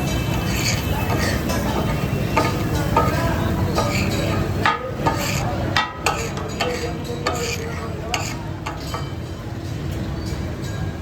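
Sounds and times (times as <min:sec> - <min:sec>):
offal sizzling: 0:00.0 - 0:05.4
steel spatulas striking a griddle: 0:00.0 - 0:09.4.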